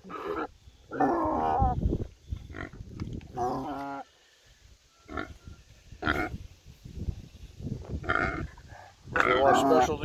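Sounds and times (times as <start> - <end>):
pigs calling: 0.0 - 1.8, 8.0 - 10.0.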